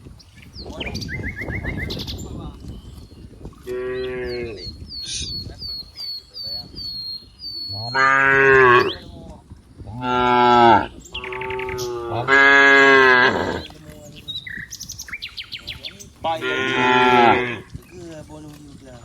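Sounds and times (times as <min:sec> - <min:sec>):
cows mooing: 0:03.6 - 0:04.7, 0:07.7 - 0:09.0, 0:09.8 - 0:13.8, 0:16.3 - 0:17.7.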